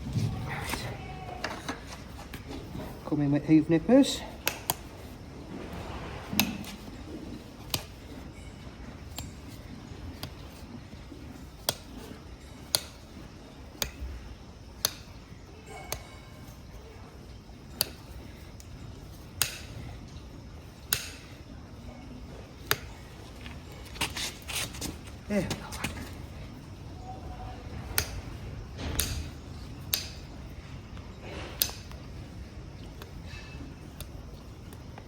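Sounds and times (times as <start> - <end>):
hoof nippers cracking: 4.3 - 21.5.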